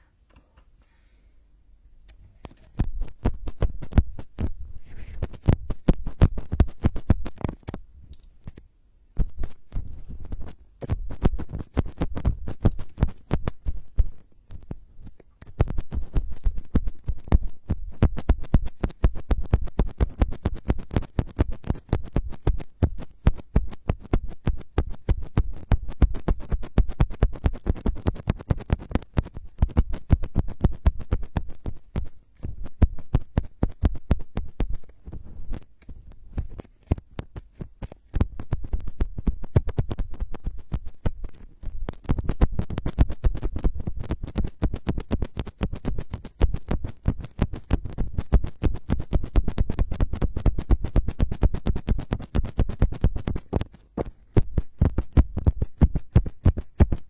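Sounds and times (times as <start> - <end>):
scratching and tapping on microphone: 2.0 - 57.0.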